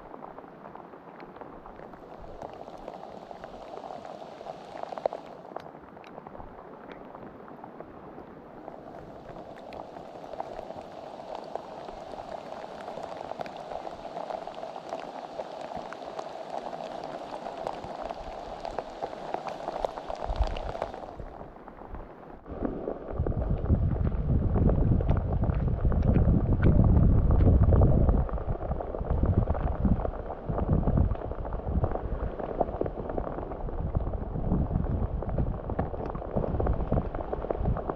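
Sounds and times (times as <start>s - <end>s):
steady rain falling: 0.0s - 37.9s
wind buffeting microphone: 20.0s - 37.9s.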